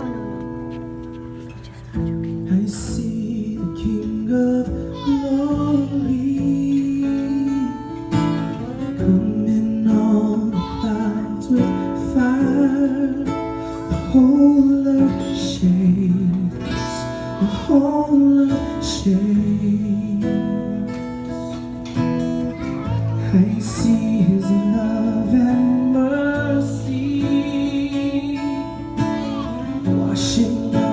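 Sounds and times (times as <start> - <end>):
strummed acoustic guitar: 0.0 - 30.9
person singing: 2.5 - 21.6, 22.4 - 30.9.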